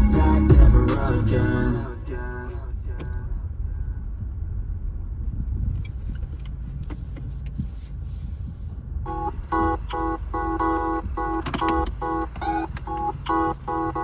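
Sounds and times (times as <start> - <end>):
low rumble inside car: 0.0 - 14.0
car warning chime beeping: 9.1 - 14.0.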